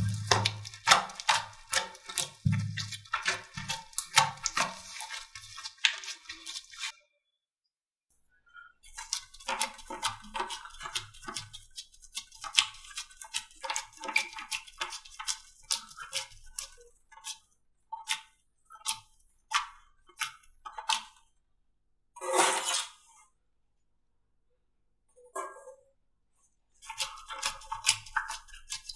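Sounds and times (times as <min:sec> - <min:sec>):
slime crackling and popping: 0:00.0 - 0:04.6
slime squish: 0:00.0 - 0:06.9, 0:08.9 - 0:17.4, 0:26.8 - 0:28.9.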